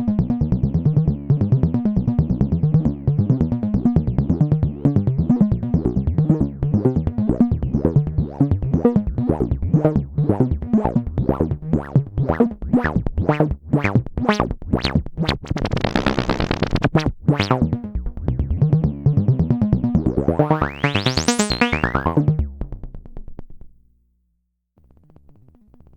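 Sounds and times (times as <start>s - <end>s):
synthesizer notes: 9.2s - 18.6s, 20.0s - 22.4s.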